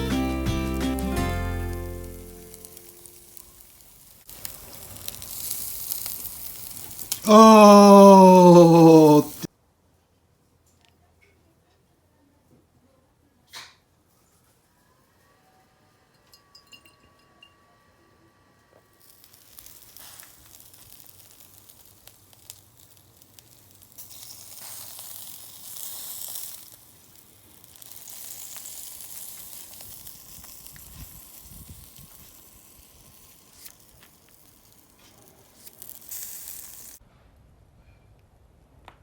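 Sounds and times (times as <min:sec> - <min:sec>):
meat sizzling over wood fire: 0:00.0 - 0:07.3, 0:19.0 - 0:37.0
fire pops and crackles: 0:02.2 - 0:07.2, 0:19.0 - 0:37.0.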